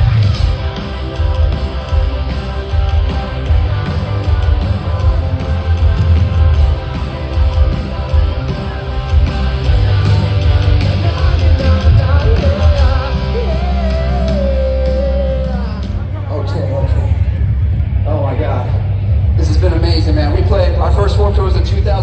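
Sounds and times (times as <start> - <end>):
person singing: 0.0 - 16.3
live rock band playing: 0.0 - 19.4.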